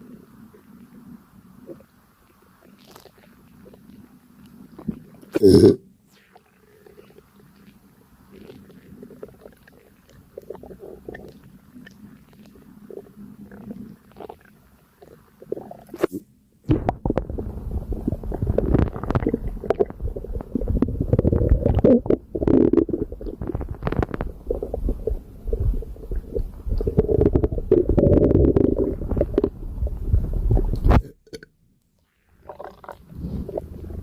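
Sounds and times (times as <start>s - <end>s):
stomach gurgling and rumbling: 0.0s - 34.0s.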